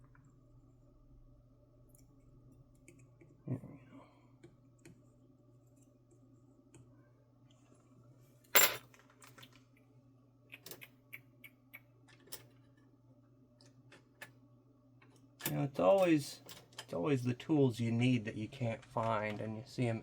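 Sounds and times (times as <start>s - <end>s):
metal tools clinking: 8.6s - 8.8s.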